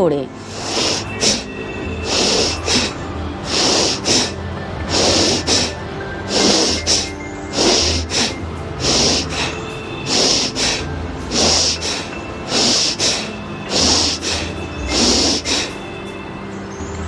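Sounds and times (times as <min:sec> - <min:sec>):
woman breathing forcefully through nose: 0:00.4 - 0:16.5.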